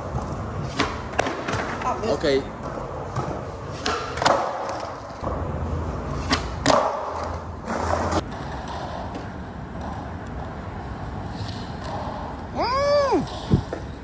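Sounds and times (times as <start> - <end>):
skateboard cracking: 0.0 - 5.4, 6.2 - 10.4
skateboard wheels rolling: 0.0 - 14.0.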